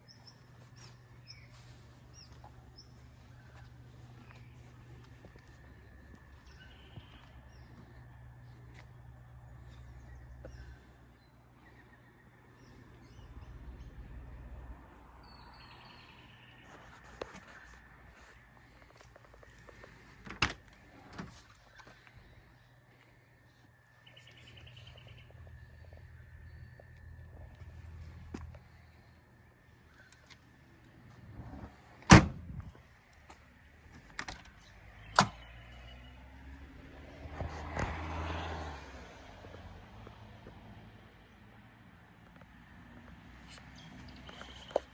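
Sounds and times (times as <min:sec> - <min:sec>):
faint birds chirping: 0:00.0 - 0:32.0, 0:32.6 - 0:37.0, 0:41.2 - 0:44.9
car doors slamming: 0:32.1 - 0:32.6.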